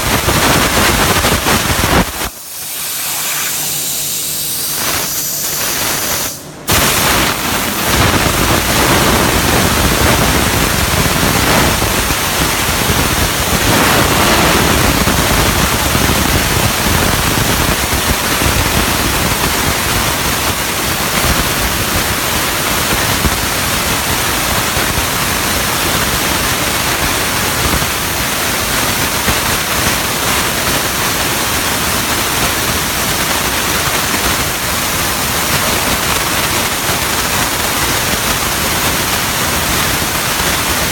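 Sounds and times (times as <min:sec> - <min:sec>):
plasma cutter hissing: 0:00.0 - 0:16.4.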